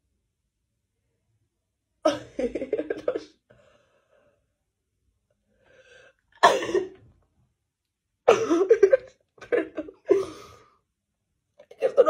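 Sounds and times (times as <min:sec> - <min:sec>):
faint breath in: 0:03.5 - 0:04.5, 0:05.5 - 0:06.3
person sneezing: 0:06.4 - 0:06.9
rapid coughing: 0:06.4 - 0:07.0, 0:08.3 - 0:10.6.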